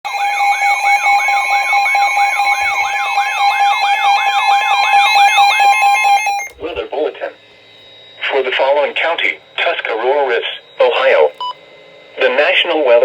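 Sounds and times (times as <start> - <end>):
two-tone alert alarm: 0.0 - 6.8, 8.1 - 11.6
rising siren-like sweep: 0.1 - 6.8.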